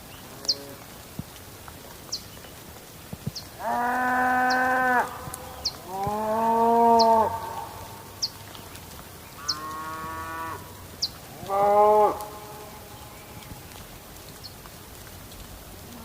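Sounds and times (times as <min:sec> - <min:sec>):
rain hiss: 0:00.0 - 0:16.0
cattle mooing: 0:05.9 - 0:07.7, 0:11.4 - 0:12.3.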